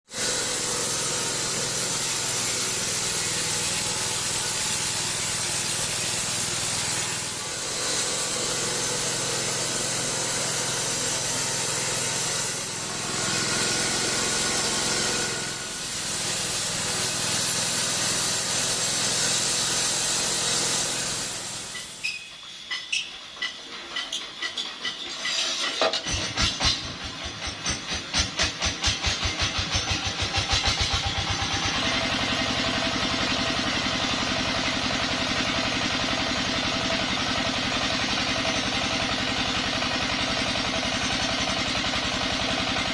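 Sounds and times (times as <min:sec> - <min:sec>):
bandsaw cutting wood: 0:00.1 - 0:22.0.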